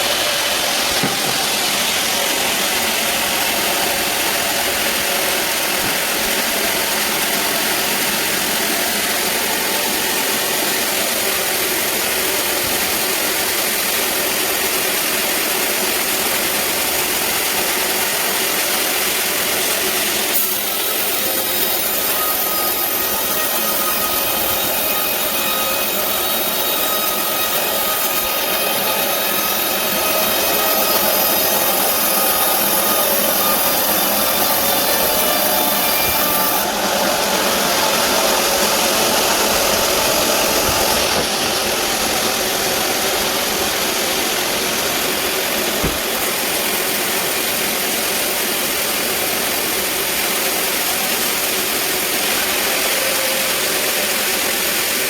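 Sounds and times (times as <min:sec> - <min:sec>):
band saw cutting log: 0:00.0 - 0:55.0
single short knock: 0:01.0 - 0:01.4, 0:45.8 - 0:46.0.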